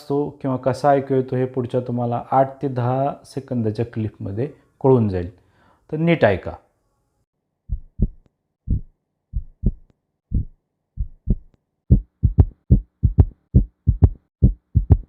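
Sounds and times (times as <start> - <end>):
heartbeat through stethoscope: 7.7 - 15.0.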